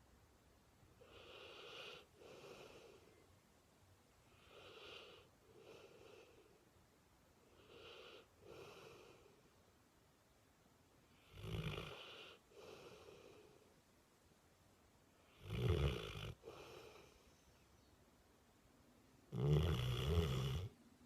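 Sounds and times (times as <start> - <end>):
soft breath: 1.0 - 3.4, 4.2 - 6.8, 7.4 - 9.6, 11.9 - 13.8, 16.4 - 17.9
loud rattling snores: 15.4 - 16.4, 19.3 - 20.7.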